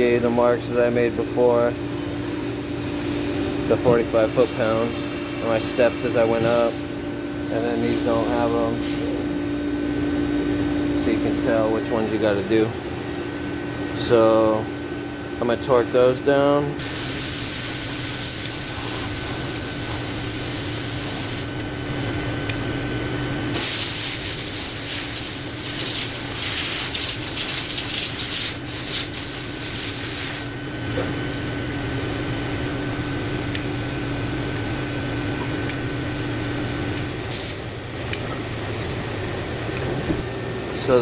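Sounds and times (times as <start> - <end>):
steady rushing hiss: 16.8 - 21.5.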